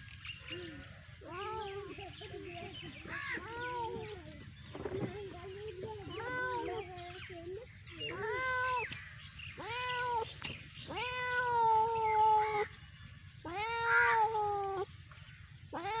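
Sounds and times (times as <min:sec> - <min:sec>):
cat meowing: 0:10.9 - 0:12.6.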